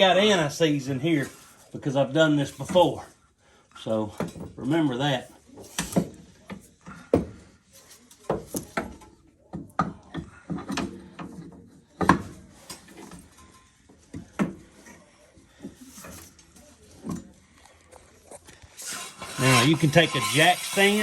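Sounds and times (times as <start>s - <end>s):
metal clunks and knocks: 8.3s - 14.8s.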